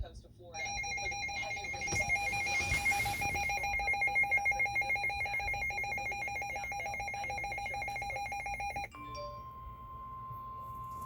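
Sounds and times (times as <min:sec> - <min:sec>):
weather radio alert alarm: 0:00.6 - 0:08.9.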